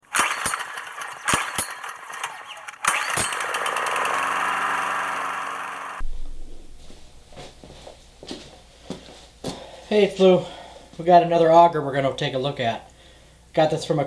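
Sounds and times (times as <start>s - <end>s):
small gas engine popping and running: 0.0s - 6.0s.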